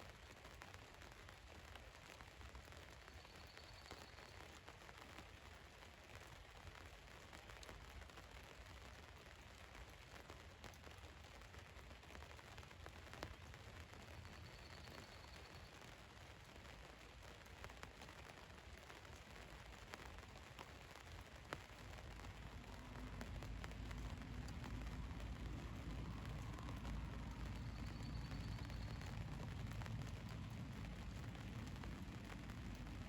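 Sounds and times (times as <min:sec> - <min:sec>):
raindrop ticks on a van: 0:00.1 - 0:33.0
rain hissing: 0:11.2 - 0:33.0
low rumble: 0:22.1 - 0:33.0.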